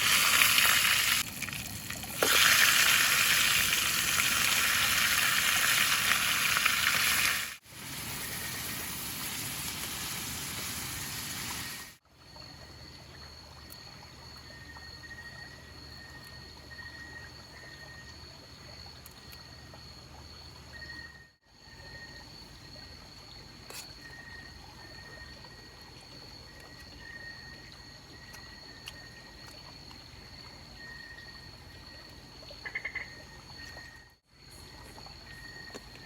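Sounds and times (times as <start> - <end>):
rushing water: 0.0 - 12.0
faint hiss: 2.2 - 12.0.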